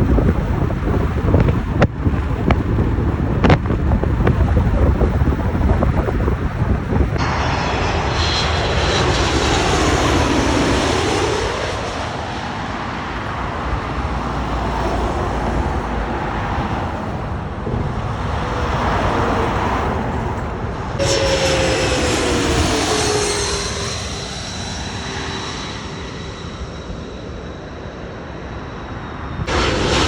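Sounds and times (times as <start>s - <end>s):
high engine whine: 0.0s - 30.0s
jet engines roaring: 0.0s - 30.0s.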